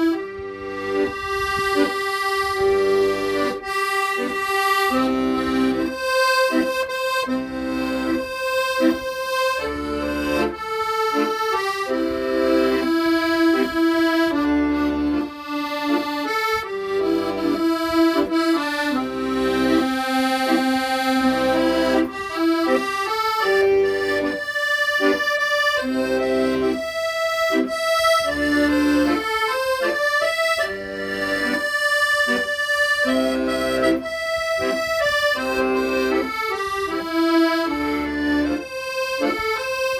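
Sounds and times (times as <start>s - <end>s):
accordion playing slow melody: 0.0s - 39.9s.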